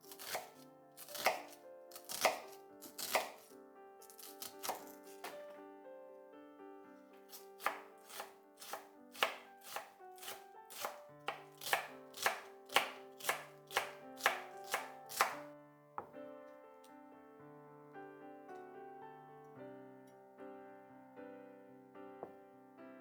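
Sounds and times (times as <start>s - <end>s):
knife chopping on cutting board: 0.1s - 5.5s, 7.3s - 15.4s.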